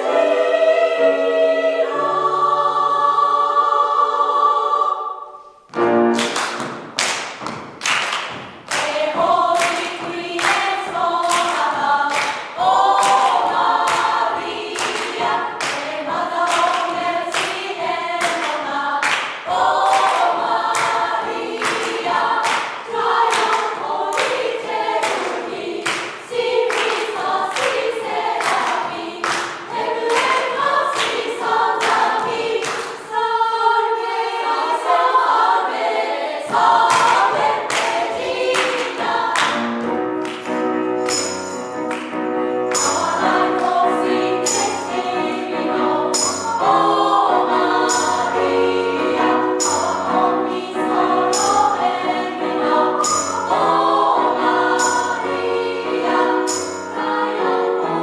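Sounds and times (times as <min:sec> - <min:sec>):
choir singing a hymn: 0:00.0 - 0:06.2, 0:08.8 - 0:39.9, 0:42.4 - 0:58.0
accompaniment with steady beat: 0:42.8 - 0:52.2.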